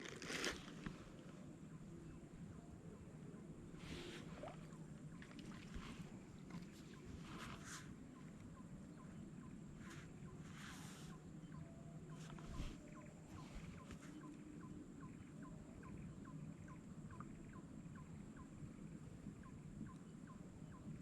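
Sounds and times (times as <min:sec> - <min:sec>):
rustles: 0:00.0 - 0:01.4, 0:03.8 - 0:08.4
faint animal chirps: 0:03.8 - 0:21.0.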